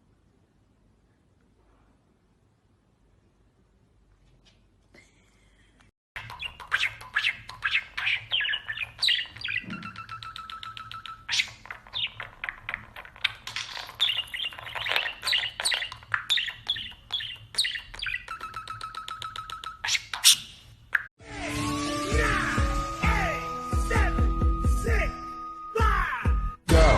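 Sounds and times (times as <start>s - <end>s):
bird chirping: 6.2s - 21.1s.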